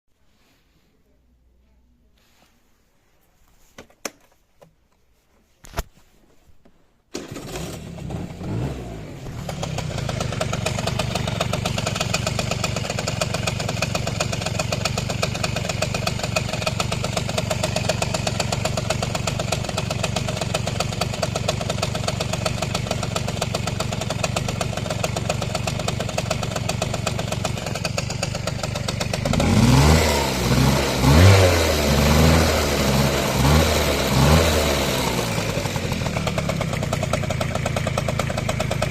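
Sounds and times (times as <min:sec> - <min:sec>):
engine revving: 0:07.2 - 0:13.6, 0:29.2 - 0:36.9
engine idling with rapid knock: 0:09.2 - 0:38.9.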